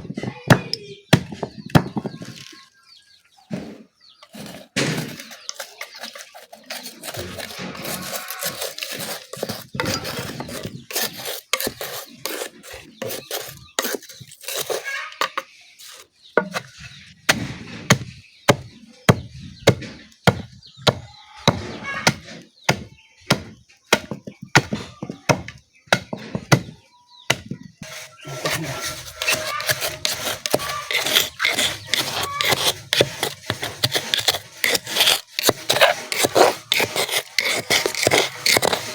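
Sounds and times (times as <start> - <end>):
pestle pounding in a mortar: 27.3 - 38.9.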